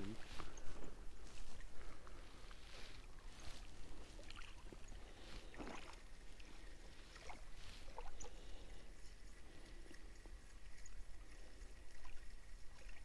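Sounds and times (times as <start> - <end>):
lake water lapping: 0.0 - 13.0.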